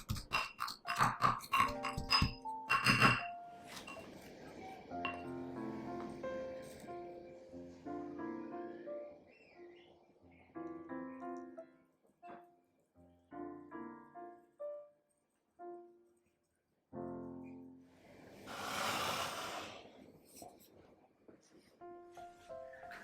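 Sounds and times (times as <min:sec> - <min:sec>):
gentle solo piano music: 0:00.9 - 0:16.2
loud hissing rush: 0:17.9 - 0:20.2.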